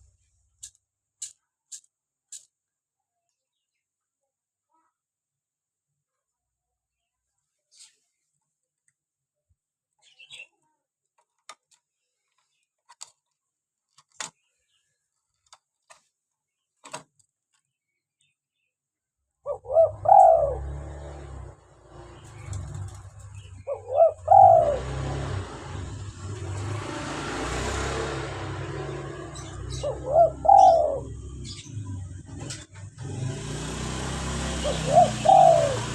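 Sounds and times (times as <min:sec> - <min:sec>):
dove cooing: 0:19.4 - 0:32.6, 0:34.3 - 0:35.9.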